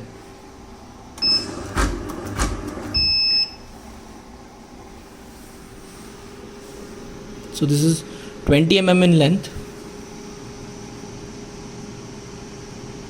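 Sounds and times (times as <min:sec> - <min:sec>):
faint machine hum: 0:00.0 - 0:13.0
machine whirring: 0:01.2 - 0:03.1
short electronic beeps: 0:03.0 - 0:03.6.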